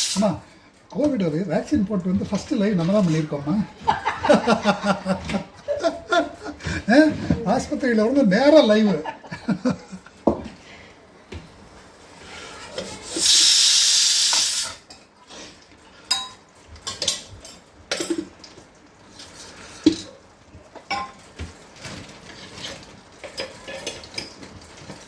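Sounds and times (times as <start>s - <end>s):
loud hiss: 0.0s - 0.4s, 13.0s - 14.8s
pots and utensils clinking: 16.0s - 25.0s.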